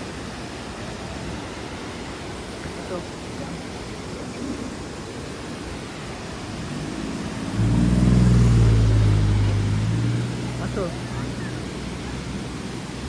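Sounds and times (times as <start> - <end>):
waterfall rushing: 0.0 - 13.0
vehicle engine humming: 6.0 - 13.0.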